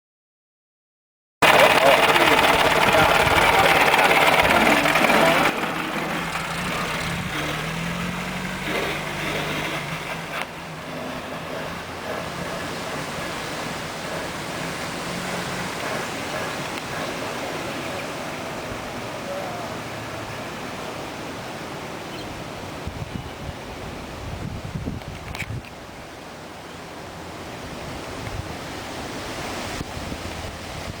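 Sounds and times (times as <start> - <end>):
car engine running: 1.4 - 20.6.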